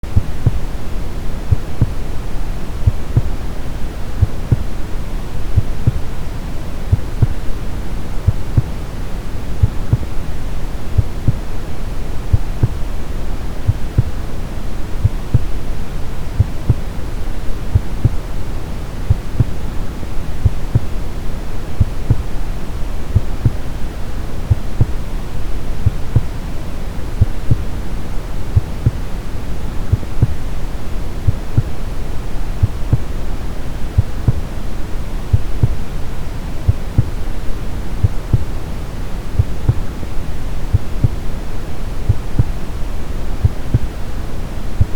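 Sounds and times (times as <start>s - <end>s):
soft low heartbeat thumps: 0.0s - 3.5s, 4.1s - 4.8s, 5.5s - 6.2s, 6.8s - 8.8s, 9.6s - 14.3s, 15.0s - 18.4s, 19.1s - 22.4s, 23.1s - 23.8s, 24.4s - 25.1s, 25.7s - 26.4s, 27.2s - 27.9s, 28.5s - 29.2s, 29.8s - 30.5s, 31.2s - 33.2s, 33.9s - 34.6s, 35.3s - 35.9s, 36.7s - 38.6s, 39.3s - 42.8s, 43.4s - 44.0s.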